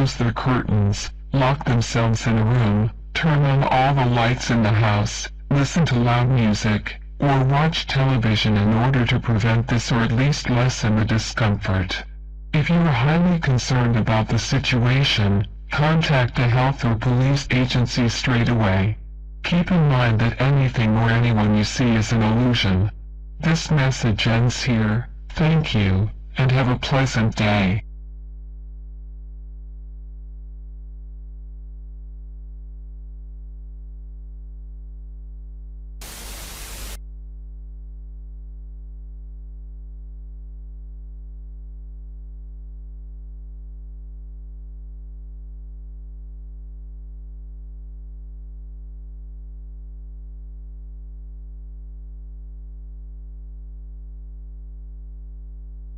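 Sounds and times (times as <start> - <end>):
burst of static: 36.0 - 37.0
low electronic hum: 36.0 - 37.0.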